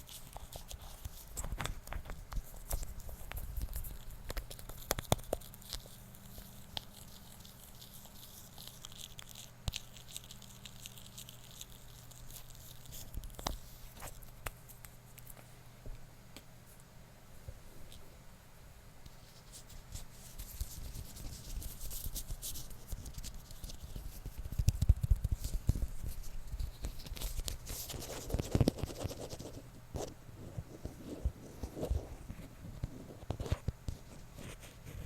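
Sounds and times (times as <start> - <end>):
scratching and rubbing on microphone: 19.2 - 35.0.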